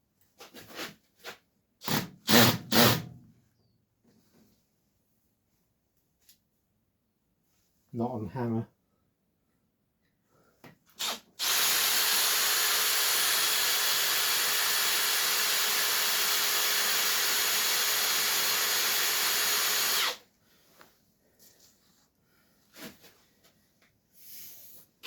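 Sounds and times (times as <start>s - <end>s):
power drill running: 11.0s - 20.2s.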